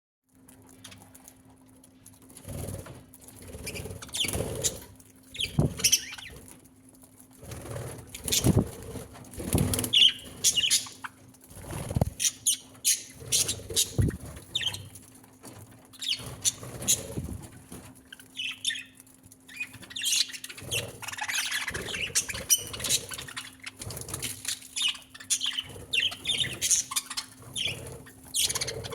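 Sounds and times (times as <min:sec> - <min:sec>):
wings flapping: 0:02.1 - 0:28.9
birds chirping and squawking: 0:03.4 - 0:06.6, 0:07.6 - 0:15.0, 0:15.8 - 0:28.9.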